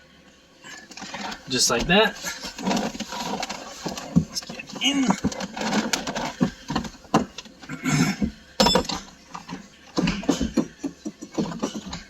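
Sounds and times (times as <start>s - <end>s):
knocks and clunks in car: 8.2s - 12.0s.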